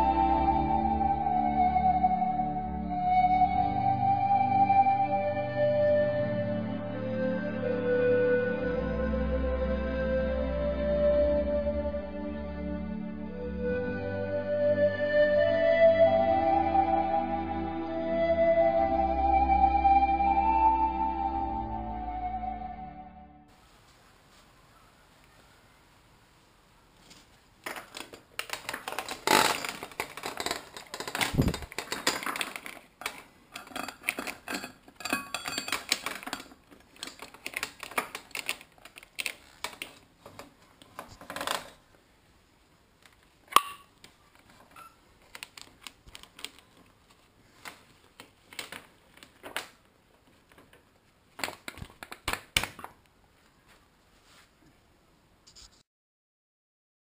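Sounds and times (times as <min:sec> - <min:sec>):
metal tools clinking and rattling: 0:29.3 - 0:38.6, 0:44.5 - 0:45.0.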